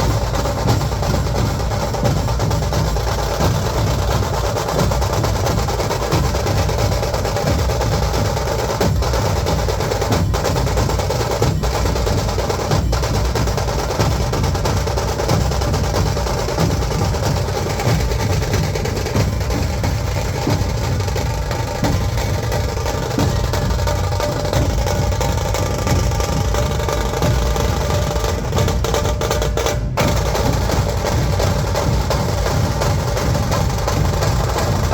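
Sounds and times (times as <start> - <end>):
barrel drums beating: 0.0 - 34.9
rapid drum rolls: 0.0 - 34.9.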